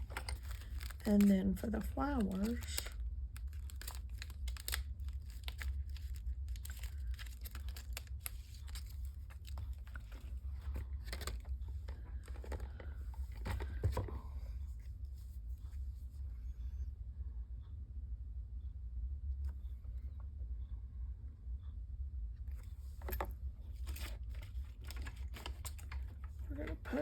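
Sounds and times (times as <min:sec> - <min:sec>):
paper rustling and crinkling: 0:00.0 - 0:14.3, 0:22.9 - 0:27.0
steady low hum: 0:00.0 - 0:27.0.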